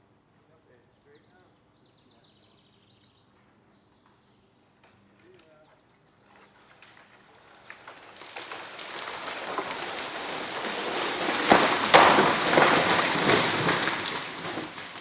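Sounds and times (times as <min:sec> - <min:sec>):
tree crashing to the ground: 0:06.5 - 0:15.0
branches breaking and swishing: 0:06.6 - 0:15.0.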